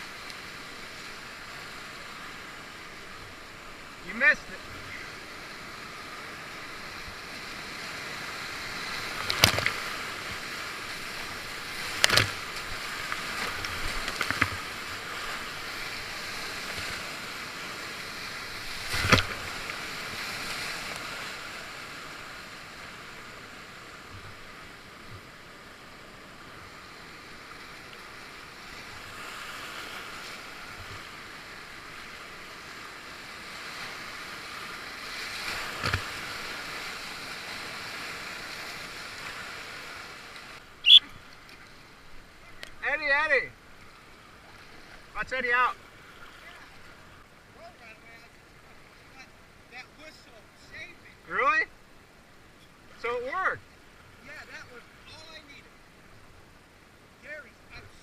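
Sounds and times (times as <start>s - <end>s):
rushing whitewater: 0.0s - 58.0s.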